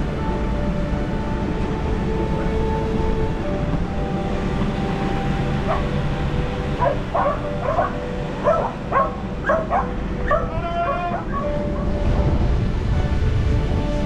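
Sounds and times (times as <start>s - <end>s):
dog barking and yipping: 5.7s - 5.9s, 6.8s - 11.9s.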